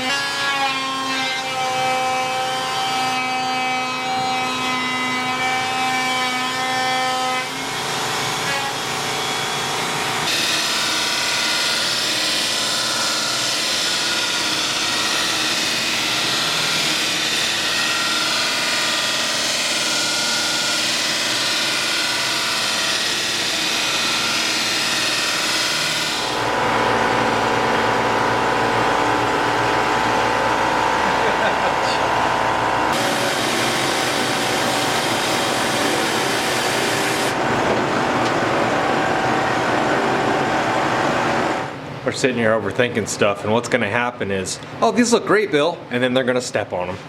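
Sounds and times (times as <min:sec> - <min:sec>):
router whining: 0:07.5 - 0:41.8
buffing wheel whirring: 0:24.6 - 0:41.8.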